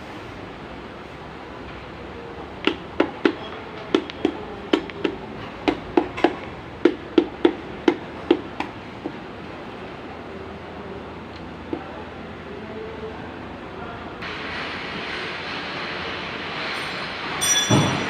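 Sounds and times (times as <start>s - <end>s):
steady background hum: 0.0s - 18.0s
hammer tapping: 2.6s - 9.2s.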